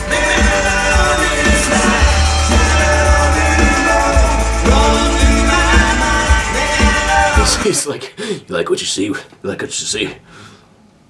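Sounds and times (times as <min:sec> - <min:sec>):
song with singer and heavy bass: 0:00.0 - 0:07.8.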